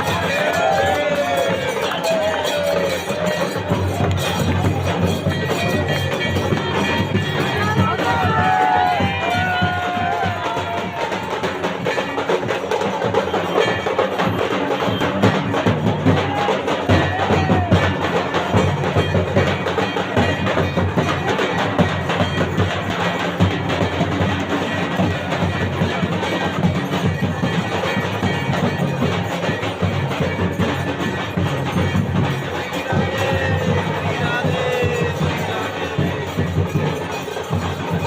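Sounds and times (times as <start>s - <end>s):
dhol drums beating: 0.0s - 38.0s
shehnai reedy melody: 0.0s - 38.0s.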